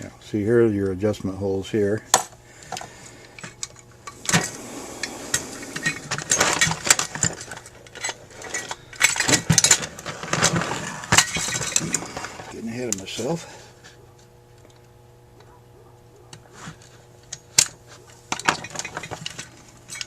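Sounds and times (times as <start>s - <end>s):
metal parts and tools clinking: 5.7s - 12.5s, 17.3s - 20.0s.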